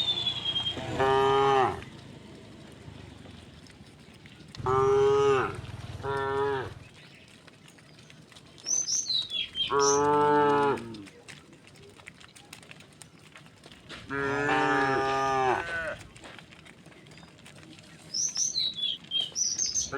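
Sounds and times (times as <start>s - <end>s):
cattle mooing: 0.1s - 1.9s, 4.6s - 6.8s, 9.6s - 11.0s, 14.1s - 16.0s.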